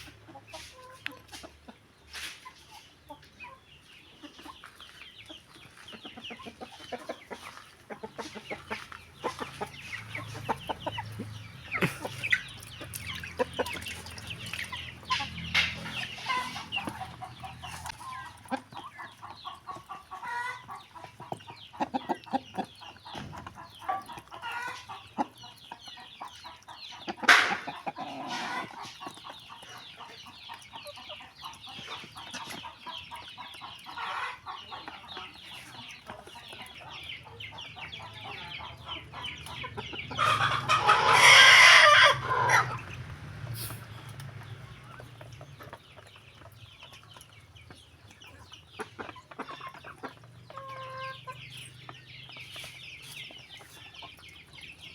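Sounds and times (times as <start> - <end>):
chickens clucking: 0.0 - 54.9.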